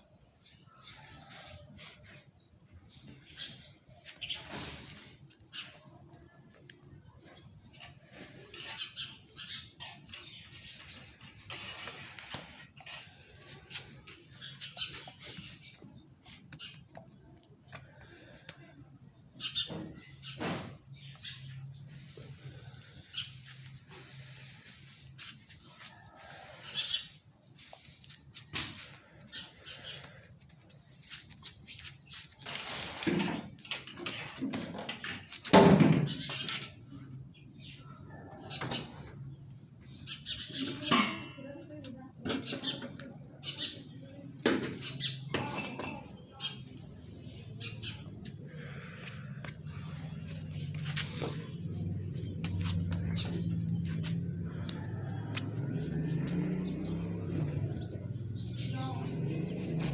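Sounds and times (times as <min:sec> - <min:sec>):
birds making scratchy hissy noises: 0:00.2 - 0:17.2, 0:19.4 - 0:37.8, 0:46.4 - 0:54.2.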